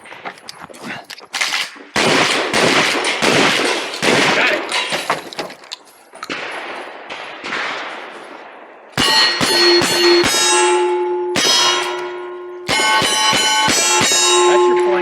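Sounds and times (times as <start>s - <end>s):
steel targets clanging: 3.0s - 6.8s, 9.0s - 15.0s.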